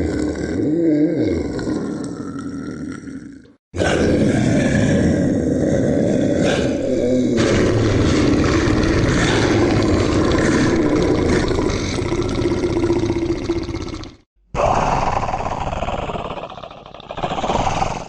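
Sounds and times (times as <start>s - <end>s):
monster growl: 0.0s - 18.0s.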